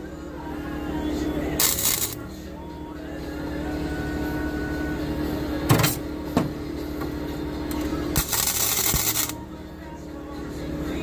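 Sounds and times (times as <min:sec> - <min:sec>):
electrical hum: 0:00.0 - 0:11.0
welder crackling hiss: 0:01.6 - 0:02.2, 0:08.2 - 0:09.4.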